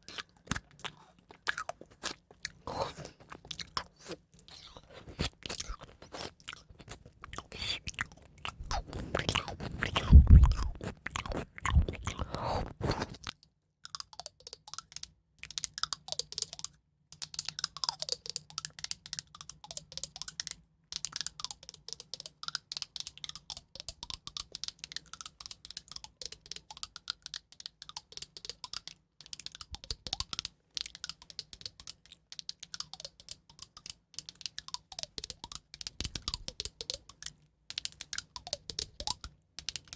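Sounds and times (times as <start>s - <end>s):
crisp crunching and crackling: 0.0s - 13.4s.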